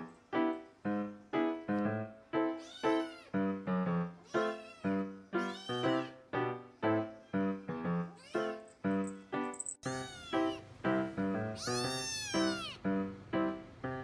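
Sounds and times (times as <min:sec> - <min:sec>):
background music of repeated notes: 0:00.1 - 0:14.0
kitten meowing: 0:02.5 - 0:03.4, 0:04.2 - 0:06.2, 0:06.9 - 0:12.8.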